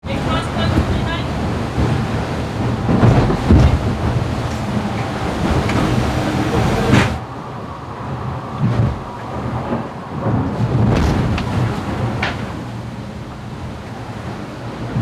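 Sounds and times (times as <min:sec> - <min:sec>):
rushing water: 0:00.0 - 0:15.0
wind buffeting microphone: 0:00.0 - 0:15.0
low thumps: 0:00.8 - 0:07.2.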